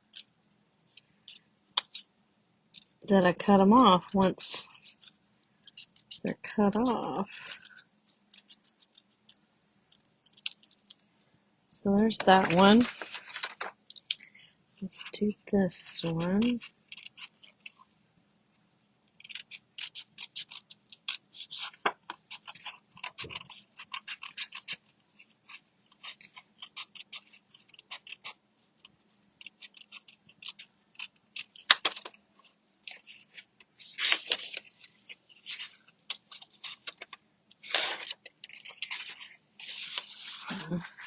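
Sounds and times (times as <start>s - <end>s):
scissors snipping paper: 4.6s - 11.0s, 16.0s - 17.9s, 19.1s - 40.9s
paper rustling: 12.2s - 14.1s, 31.4s - 41.0s.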